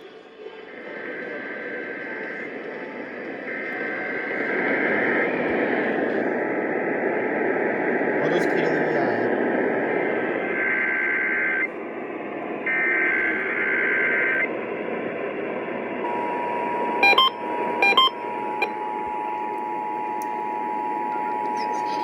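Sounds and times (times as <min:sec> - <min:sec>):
radio hiss: 0:08.2 - 0:11.7, 0:12.6 - 0:14.5, 0:16.1 - 0:22.0
data tone bursts: 0:16.1 - 0:22.0
two-tone attention signal: 0:16.1 - 0:22.0
short loud beeps: 0:16.2 - 0:18.8.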